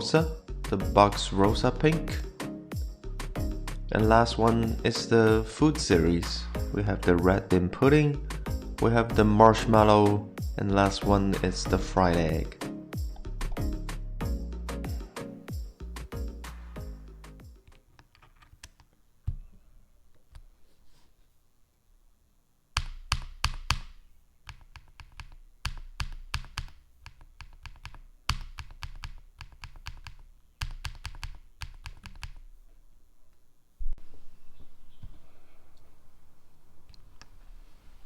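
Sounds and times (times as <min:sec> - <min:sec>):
background music: 0:00.0 - 0:17.8
mechanical keyboard typing: 0:22.8 - 0:32.5.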